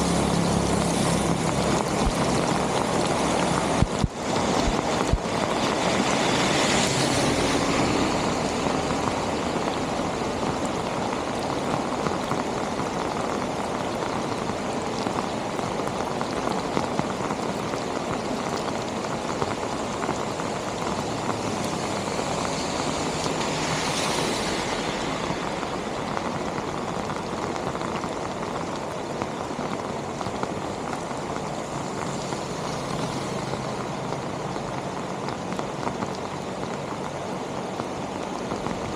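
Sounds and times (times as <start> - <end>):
rain falling: 0.0 - 38.9
rushing water: 0.0 - 38.9.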